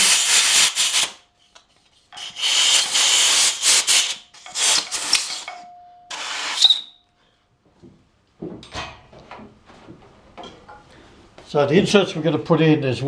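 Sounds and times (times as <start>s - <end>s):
aerosol spray hissing: 0.0s - 1.2s, 2.2s - 6.8s.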